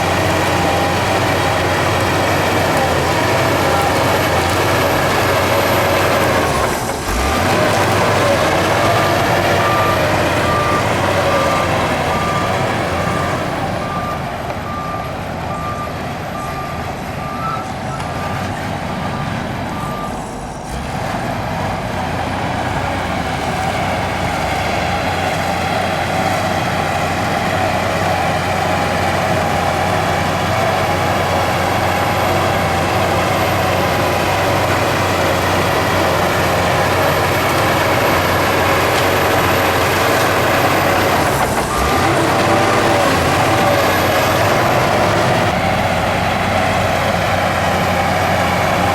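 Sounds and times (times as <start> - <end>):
heavy diesel machinery running: 0.0 - 48.9
reversing alarm beeping: 0.2 - 20.4.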